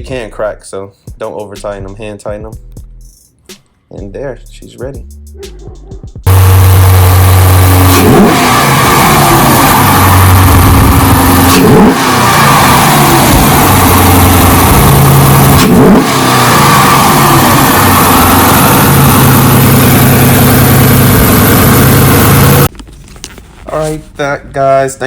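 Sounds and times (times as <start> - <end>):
car engine revving: 6.2 - 22.7.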